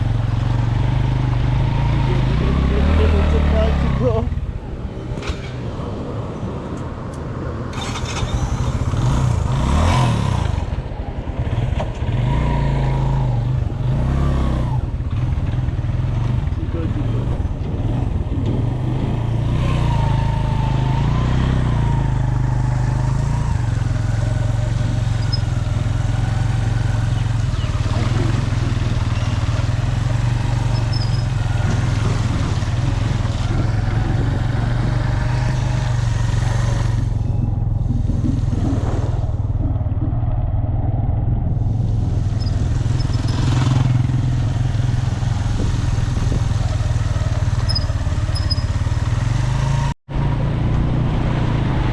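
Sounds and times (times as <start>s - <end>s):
road and wind noise: 0.0s - 51.9s
motorcycle engine running: 7.8s - 51.9s.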